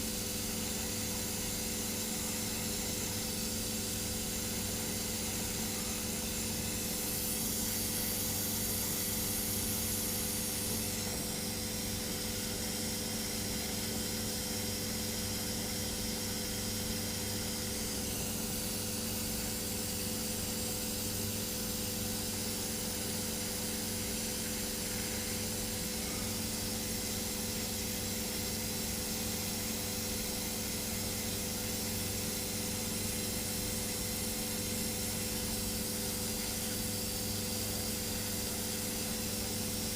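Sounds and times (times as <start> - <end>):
torch flame hissing: 2.3 - 12.2.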